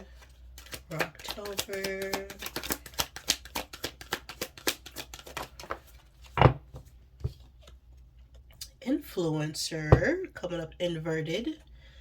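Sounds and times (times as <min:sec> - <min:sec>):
cards being shuffled: 0:00.1 - 0:06.4.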